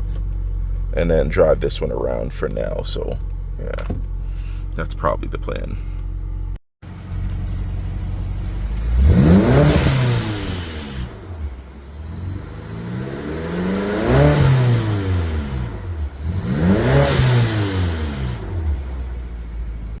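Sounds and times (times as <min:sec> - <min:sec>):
car engine revving: 0:06.9 - 0:20.0.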